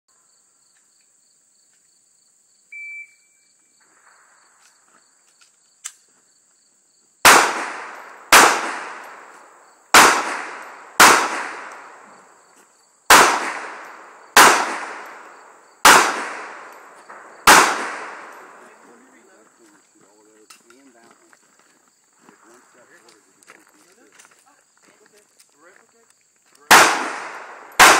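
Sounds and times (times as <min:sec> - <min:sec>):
insects buzzing: 0:00.1 - 0:27.9
shot timer beep: 0:02.8 - 0:03.2
pistol shots echoing: 0:07.2 - 0:12.2, 0:13.1 - 0:18.7, 0:26.7 - 0:27.9.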